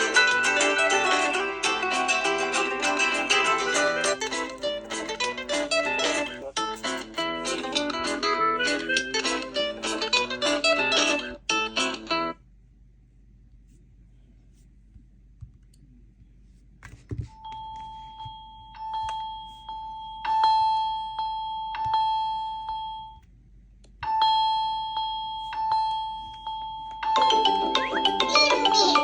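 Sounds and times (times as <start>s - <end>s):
phone ringtone chime: 0.0s - 7.9s, 17.4s - 23.2s, 24.0s - 29.0s
busy ringtone tune: 0.0s - 12.2s, 17.4s - 23.2s, 24.0s - 29.0s.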